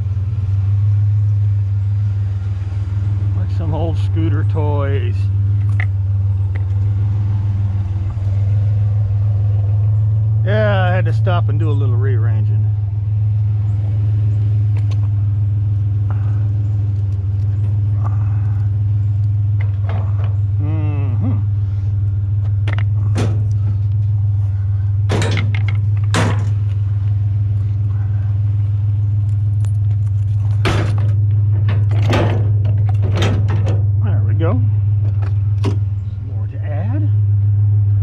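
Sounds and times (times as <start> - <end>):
truck engine idling: 0.0 - 38.0
scrap metal clanking: 22.7 - 26.7, 30.3 - 33.9.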